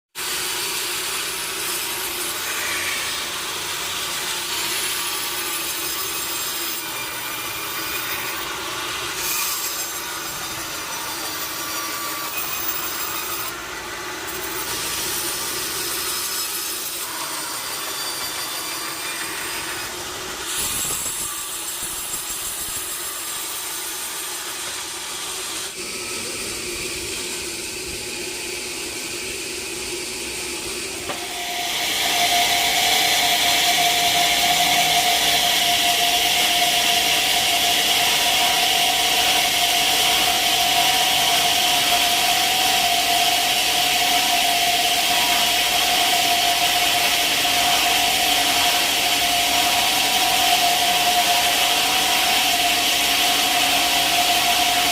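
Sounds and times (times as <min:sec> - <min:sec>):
saw cutting wood hissing: 0:00.2 - 0:54.9
saw machine hum: 0:00.2 - 0:54.9.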